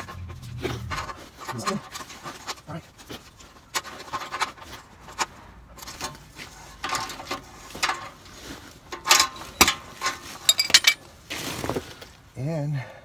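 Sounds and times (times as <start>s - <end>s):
metal tools clinking and scraping: 3.7s - 11.1s.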